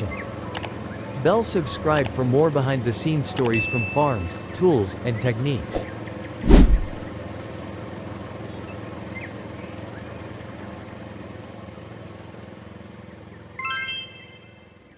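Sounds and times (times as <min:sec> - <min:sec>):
low mechanical hum: 0:00.0 - 0:14.9
bright chime: 0:13.6 - 0:14.9.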